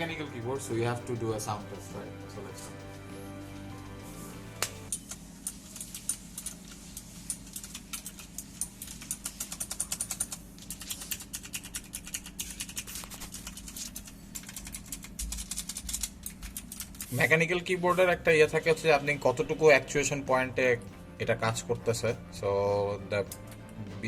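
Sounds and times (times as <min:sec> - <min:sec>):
mechanical keyboard typing clicks: 0:09.0 - 0:17.1.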